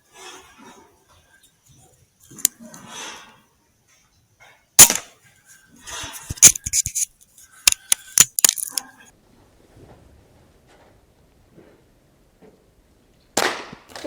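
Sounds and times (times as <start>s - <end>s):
sharp metallic clicks: 7.7s - 8.8s.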